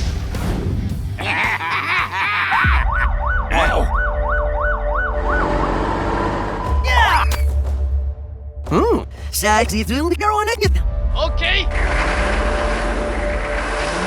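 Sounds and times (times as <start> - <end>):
cartoon siren wail: 2.6 - 5.7.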